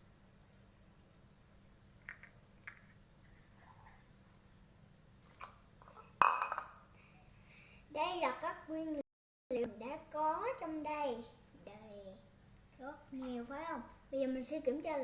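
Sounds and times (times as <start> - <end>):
rustle: 0.0 - 7.6.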